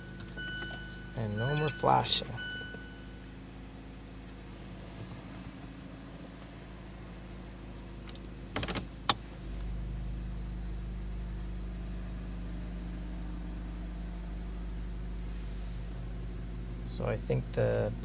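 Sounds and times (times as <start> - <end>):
car engine idling: 0.0 - 18.0
car starter cranking: 8.0 - 11.9.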